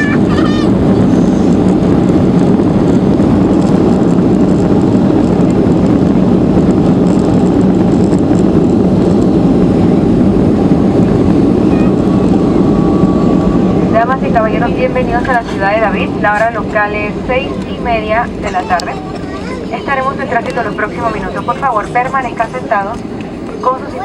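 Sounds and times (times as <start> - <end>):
jet engines and airflow rushing: 0.0 - 24.0.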